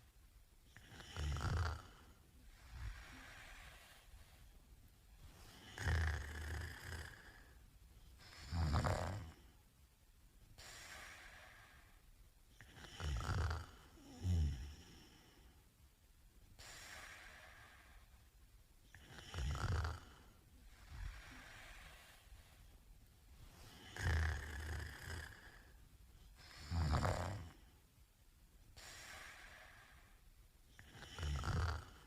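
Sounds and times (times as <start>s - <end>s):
soft breaths: 0.0s - 32.0s
man snoring: 0.8s - 3.9s, 5.5s - 7.5s, 8.3s - 9.5s, 12.6s - 15.3s, 18.9s - 22.1s, 23.7s - 25.7s, 26.5s - 27.6s, 30.8s - 32.0s.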